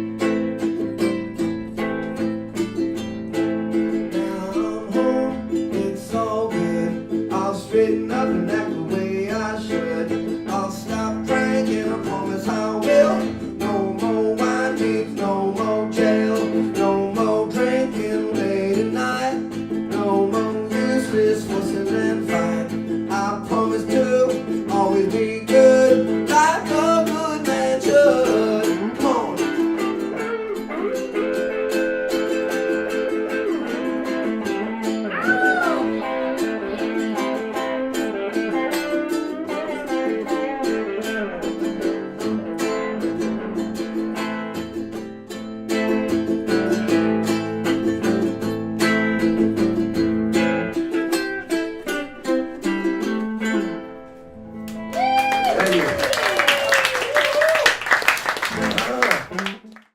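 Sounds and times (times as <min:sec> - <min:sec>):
strummed acoustic guitar: 0:00.0 - 0:54.9
person singing: 0:03.7 - 0:44.8, 0:58.5 - 0:59.9.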